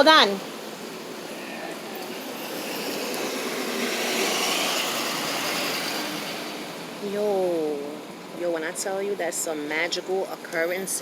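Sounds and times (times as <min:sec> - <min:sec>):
vehicle passing: 0:00.0 - 0:10.4.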